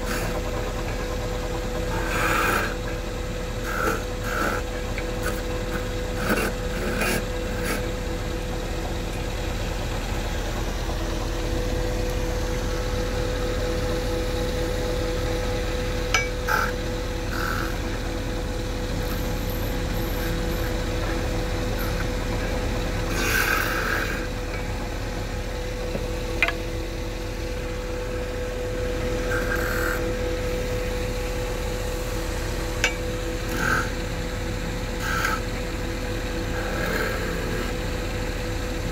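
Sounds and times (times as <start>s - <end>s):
tool scraping spinning wood: 0.0s - 9.2s, 16.1s - 18.0s, 19.0s - 25.2s, 29.0s - 30.3s, 32.8s - 37.8s
wood lathe motor hum: 0.0s - 38.9s.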